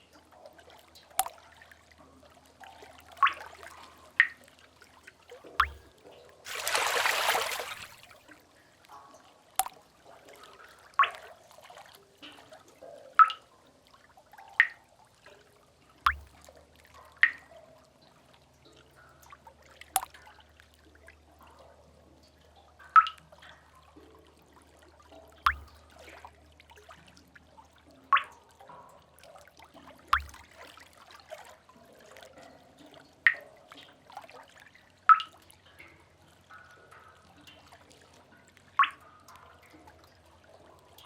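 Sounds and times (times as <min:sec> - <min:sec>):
water drops plopping into pool: 0:00.0 - 0:41.0
water splash: 0:01.2 - 0:01.4, 0:05.6 - 0:05.9, 0:06.5 - 0:08.2, 0:16.1 - 0:16.4, 0:25.5 - 0:25.8, 0:30.1 - 0:30.6.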